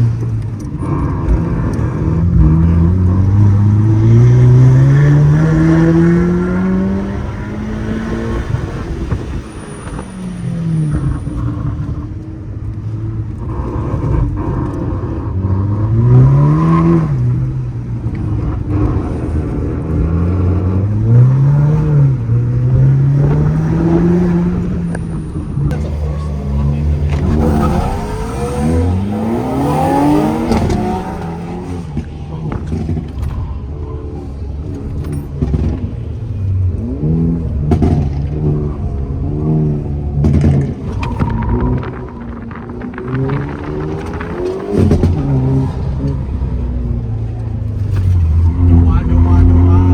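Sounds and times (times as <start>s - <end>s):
car engine revving hard: 0.0s - 49.9s.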